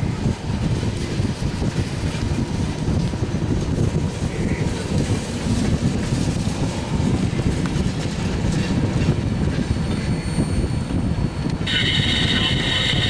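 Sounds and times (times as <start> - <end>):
freight train wheels rumbling: 0.0 - 13.0.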